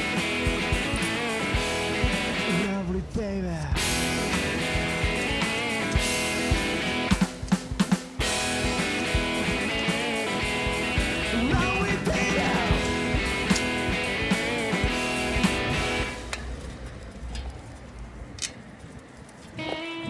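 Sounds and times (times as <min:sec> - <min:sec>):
rock music with guitar and drums: 0:00.0 - 0:02.8, 0:03.8 - 0:16.6.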